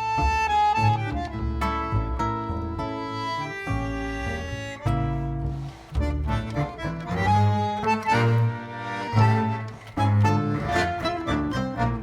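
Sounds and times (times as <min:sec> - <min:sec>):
tango trio playing: 0:00.0 - 0:12.0.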